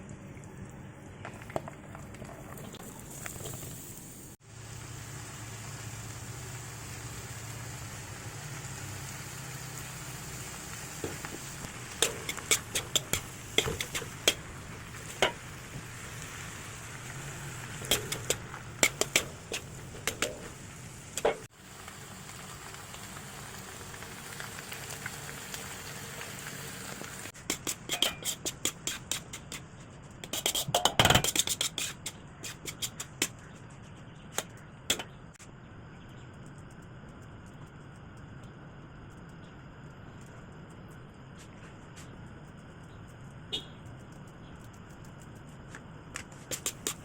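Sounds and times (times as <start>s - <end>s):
chicken sizzling in a pan: 2.8s - 27.3s
metal utensil scraping a pan: 11.8s - 14.4s, 27.5s - 29.6s, 30.2s - 33.3s.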